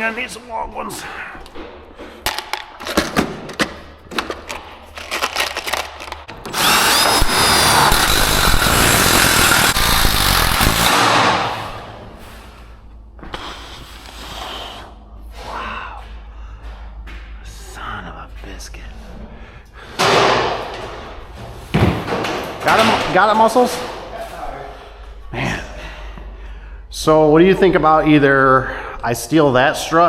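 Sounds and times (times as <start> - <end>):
power drill driving screw: 6.4 - 11.8
hardware knocks and clatter: 20.0 - 24.1.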